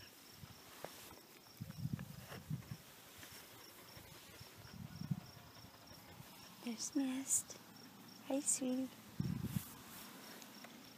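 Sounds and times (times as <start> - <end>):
faint insect chirping: 0.0 - 10.9
soft low rustling: 8.8 - 10.9.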